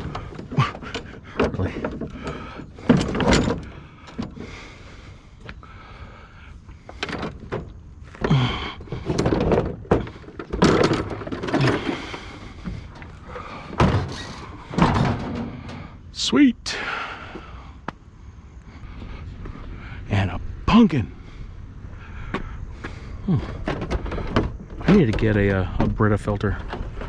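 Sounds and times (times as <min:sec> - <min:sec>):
door banging: 0:00.0 - 0:04.5, 0:07.0 - 0:16.0
objects thudding and clattering: 0:00.0 - 0:04.7, 0:06.9 - 0:16.1, 0:23.3 - 0:27.0.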